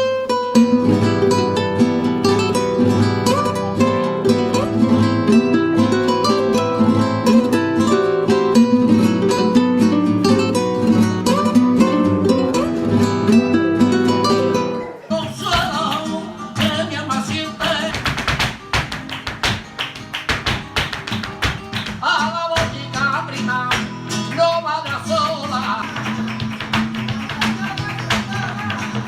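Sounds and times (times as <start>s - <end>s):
plucked guitar: 0.0s - 29.0s
person singing: 14.6s - 18.3s, 21.9s - 26.0s
sharp percussive taps: 17.6s - 29.0s.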